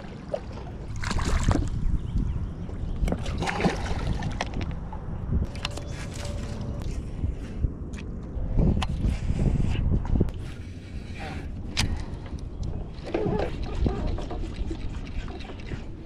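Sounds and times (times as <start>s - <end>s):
water sloshing: 0.0s - 2.0s, 2.7s - 6.8s
wind rumbling on microphone: 0.0s - 16.0s.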